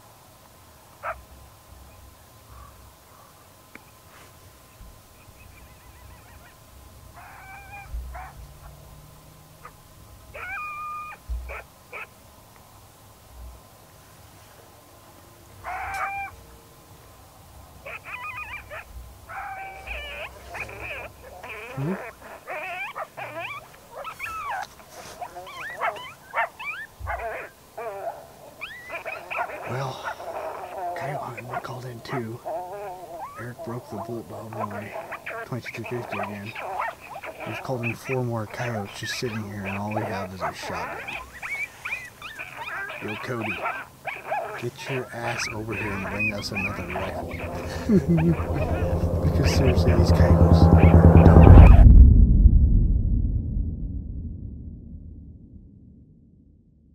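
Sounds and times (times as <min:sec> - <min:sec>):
coyote pup whining cries and yips: 0:05.4 - 0:06.6, 0:07.2 - 0:08.8, 0:09.6 - 0:12.2, 0:15.6 - 0:16.5, 0:17.8 - 0:49.0.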